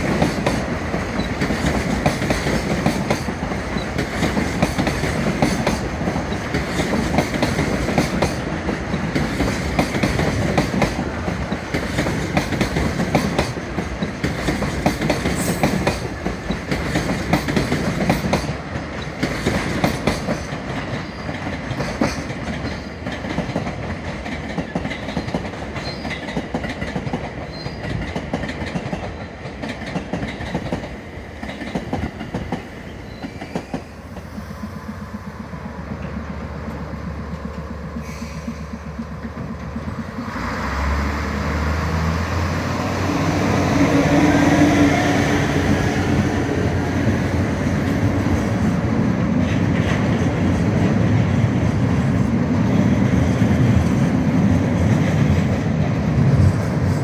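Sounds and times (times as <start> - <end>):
train wheels clattering over rail joints: 0.0 - 57.0.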